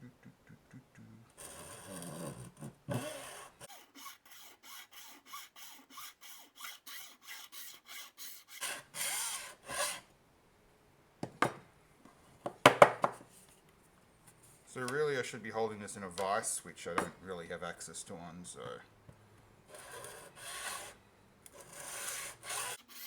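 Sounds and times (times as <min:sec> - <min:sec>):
hacksaw sawing through plastic: 0:01.4 - 0:10.0, 0:19.7 - 0:23.0
sharp knocks: 0:12.5 - 0:13.2.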